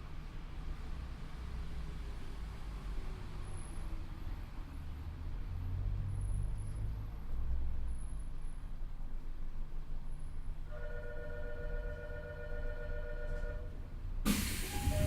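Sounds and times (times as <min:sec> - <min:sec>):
train running rumble: 0:14.2 - 0:15.0.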